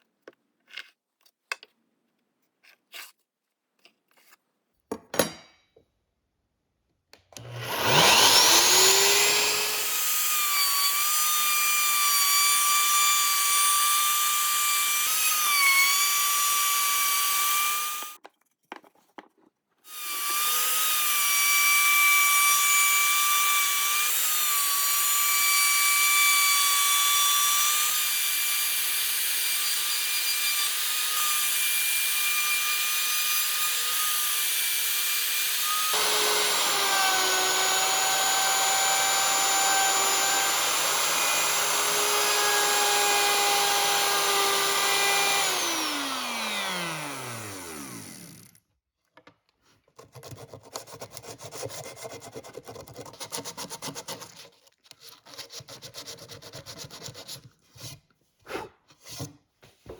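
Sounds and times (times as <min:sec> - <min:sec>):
motor winding down: 0:07.4 - 0:10.2, 0:35.9 - 0:48.6
power tool whining: 0:07.4 - 0:18.2, 0:19.9 - 0:48.6.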